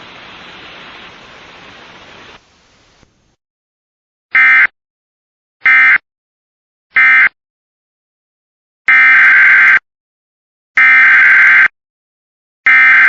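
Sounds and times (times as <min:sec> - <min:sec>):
radio static hiss: 0:00.0 - 0:03.4.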